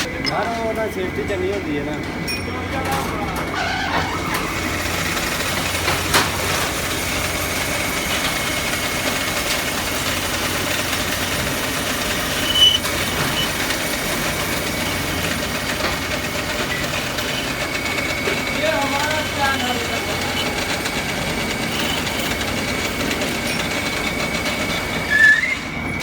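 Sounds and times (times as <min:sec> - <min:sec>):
workshop machinery running: 0:00.0 - 0:26.0
brief high squeak: 0:12.4 - 0:13.6, 0:25.1 - 0:25.8.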